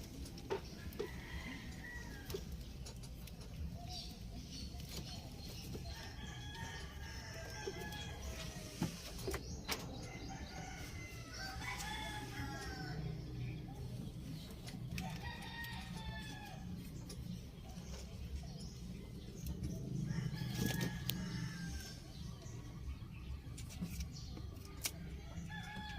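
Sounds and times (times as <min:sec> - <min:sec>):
rooster crowing: 0:10.1 - 0:13.2, 0:20.1 - 0:22.0.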